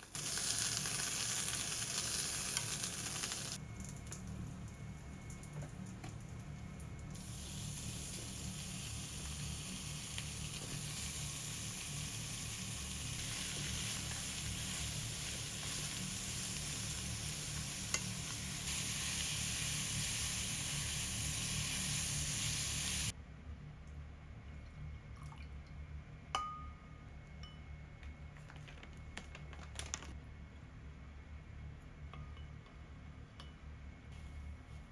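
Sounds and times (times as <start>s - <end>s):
food sizzling: 0.0s - 4.2s, 7.1s - 23.1s.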